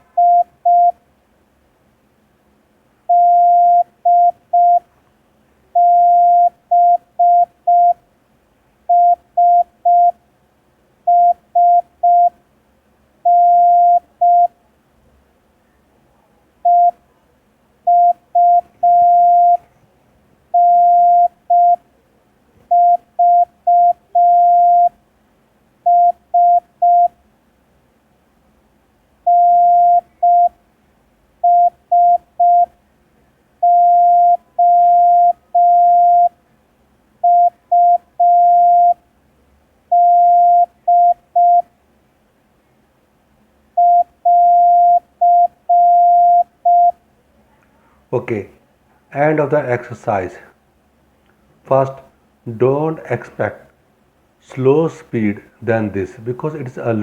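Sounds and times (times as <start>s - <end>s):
morse code beeps: 0.2s - 1.0s, 3.1s - 4.8s, 5.8s - 8.0s, 8.9s - 10.2s, 11.1s - 12.4s, 13.3s - 14.5s, 16.7s - 17.0s, 17.9s - 19.6s, 20.6s - 21.8s, 22.7s - 25.0s, 25.9s - 27.1s, 29.3s - 30.6s, 31.4s - 32.7s, 33.6s - 36.4s, 37.2s - 39.0s, 39.9s - 41.7s, 43.8s - 47.0s.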